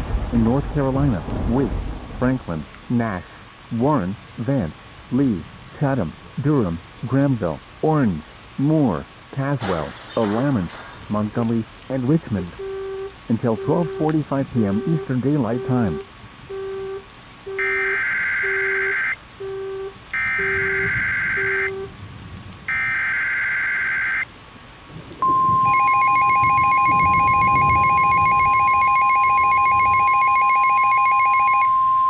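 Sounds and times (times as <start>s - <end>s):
short low beeps: 12.6s - 21.9s, 25.2s - 32.0s
steady high alarm tone: 14.7s - 21.9s, 22.7s - 24.2s, 25.2s - 32.0s
screeching warbling data tones: 25.2s - 31.7s.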